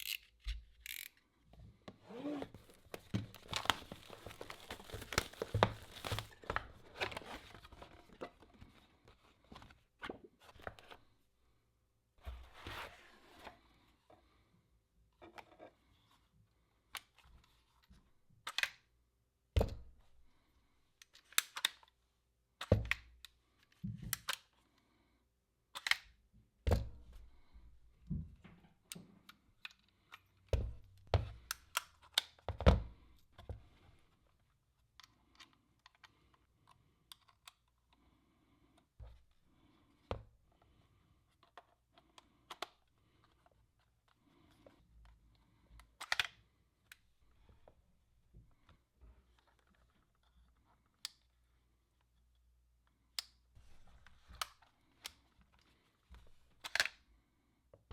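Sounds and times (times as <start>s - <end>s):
packaging rustling and tearing: 2.5s - 8.2s.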